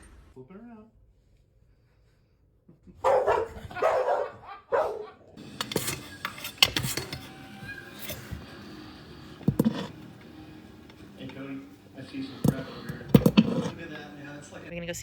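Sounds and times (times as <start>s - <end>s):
dog barking: 3.0s - 5.4s
clicks and knocks: 5.4s - 14.7s.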